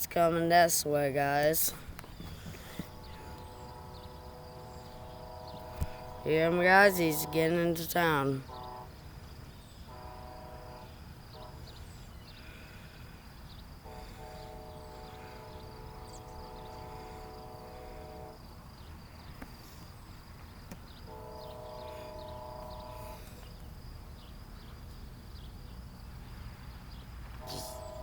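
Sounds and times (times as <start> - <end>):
distant train horn blasts: 2.2 - 13.2, 13.8 - 19.2, 20.9 - 23.6, 27.2 - 28.0.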